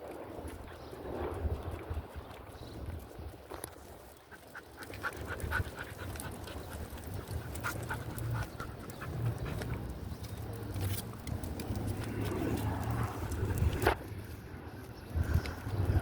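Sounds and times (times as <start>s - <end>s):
wind rumble on microphone: 0.0s - 16.0s
dog panting: 4.2s - 10.6s.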